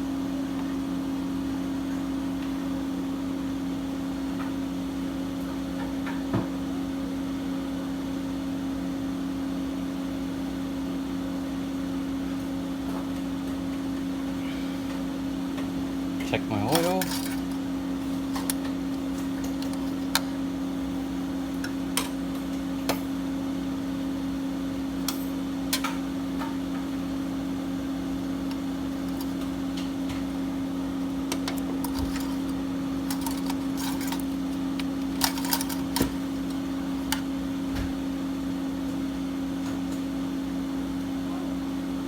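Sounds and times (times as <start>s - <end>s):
steady low hum: 14.4s - 38.2s.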